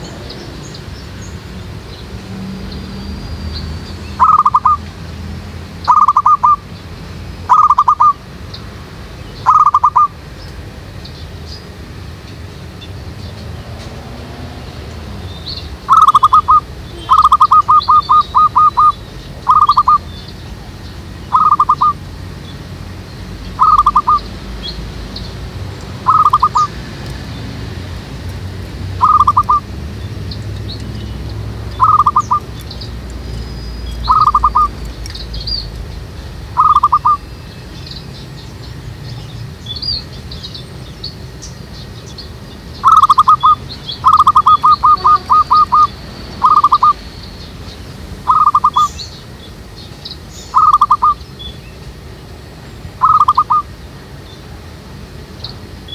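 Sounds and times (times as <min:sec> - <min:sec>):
small birds chirping: 0:00.0 - 0:55.9
dove staccato cooing: 0:04.2 - 0:04.8, 0:05.9 - 0:06.6, 0:07.5 - 0:08.2, 0:09.4 - 0:10.1, 0:15.9 - 0:20.1, 0:21.3 - 0:22.0, 0:23.6 - 0:24.3, 0:26.0 - 0:26.7, 0:29.0 - 0:29.6, 0:31.8 - 0:32.5, 0:34.1 - 0:34.8, 0:36.6 - 0:37.2, 0:42.8 - 0:47.0, 0:48.3 - 0:48.9, 0:50.6 - 0:51.2, 0:53.0 - 0:53.6.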